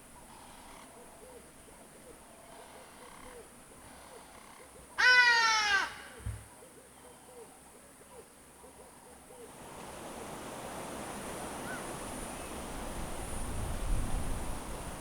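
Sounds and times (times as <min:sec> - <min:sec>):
wind on microphone: 0:10.3 - 0:15.0.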